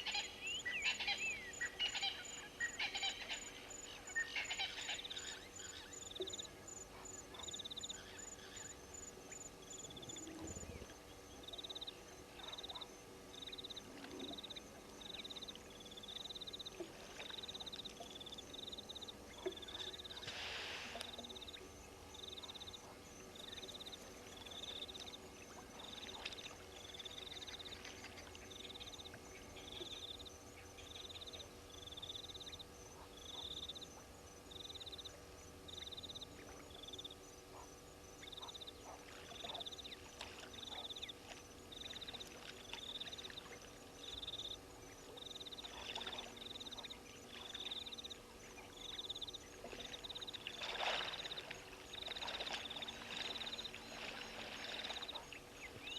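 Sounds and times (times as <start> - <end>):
faint outdoor background: 0.0 - 55.9
water splashes: 49.5 - 55.9.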